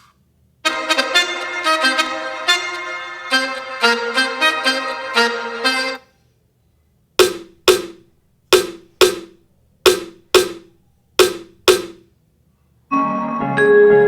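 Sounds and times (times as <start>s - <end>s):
drum hits: 7.2s - 12.1s.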